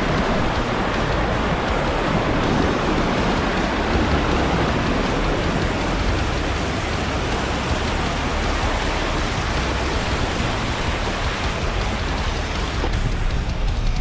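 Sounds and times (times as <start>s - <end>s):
low rumble: 0.0s - 14.0s
vehicle fording river water rushing: 0.0s - 14.0s.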